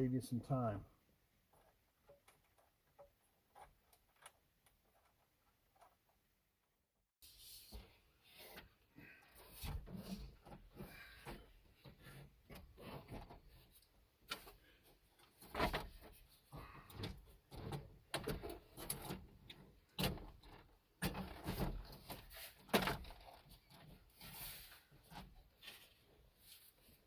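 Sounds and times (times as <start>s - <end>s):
clicks and scraping on plastic: 1.5s - 6.2s.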